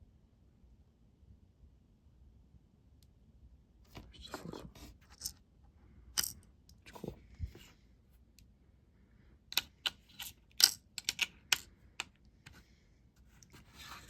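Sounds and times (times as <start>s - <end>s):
plastic parts clicking and tapping: 9.5s - 12.6s.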